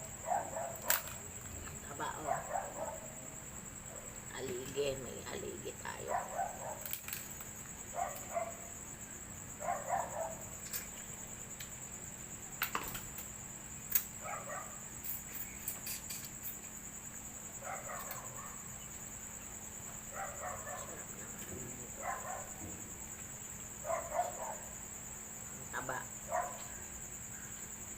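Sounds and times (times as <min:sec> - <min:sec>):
insects chirring: 0:00.0 - 0:27.9
dog barking: 0:00.2 - 0:01.0, 0:02.2 - 0:03.2, 0:06.0 - 0:06.9, 0:07.9 - 0:08.7, 0:09.6 - 0:10.5, 0:14.2 - 0:14.8, 0:17.6 - 0:18.7, 0:20.1 - 0:21.2, 0:21.9 - 0:22.6, 0:23.8 - 0:24.8, 0:26.3 - 0:26.7
sharp clicks and cracks: 0:00.8 - 0:01.8.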